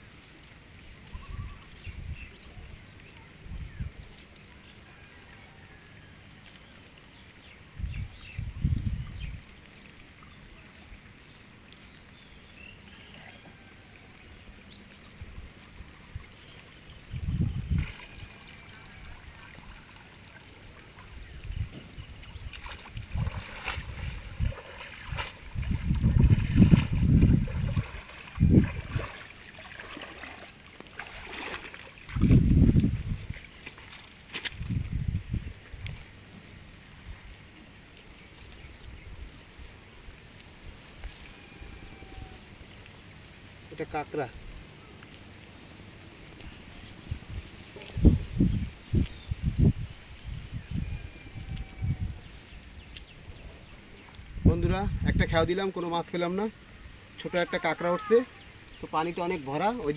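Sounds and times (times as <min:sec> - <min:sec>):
water sloshing and splashing: 0:00.1 - 0:43.7.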